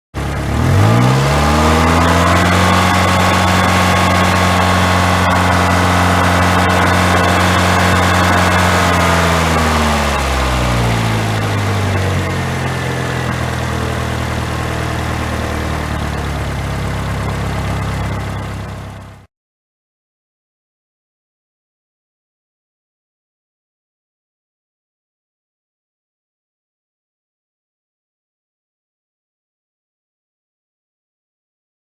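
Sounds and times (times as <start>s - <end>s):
car engine revving and idling: 0.2s - 19.3s.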